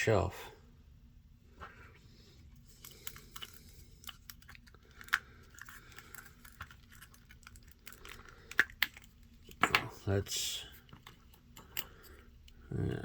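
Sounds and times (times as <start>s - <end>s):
plastic parts clicking: 2.8s - 9.9s.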